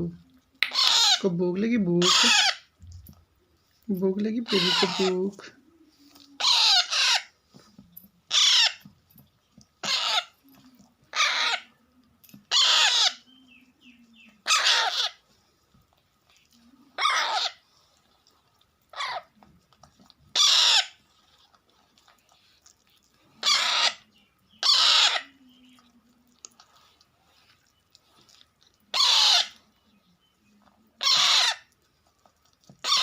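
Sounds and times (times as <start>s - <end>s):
baby parakeet begging calls: 0.6s - 1.3s, 2.0s - 2.7s, 4.4s - 5.3s, 6.4s - 7.3s, 8.3s - 8.8s, 9.8s - 10.4s, 11.1s - 11.7s, 12.5s - 15.2s, 17.0s - 17.6s, 18.9s - 19.3s, 20.3s - 21.0s, 23.4s - 25.6s, 28.9s - 29.6s, 31.0s - 31.6s.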